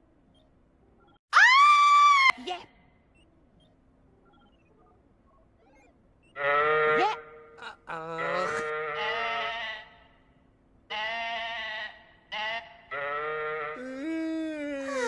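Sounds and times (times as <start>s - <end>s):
bleat-like animal calls: 5.8s - 7.3s, 8.2s - 10.1s, 10.9s - 14.0s.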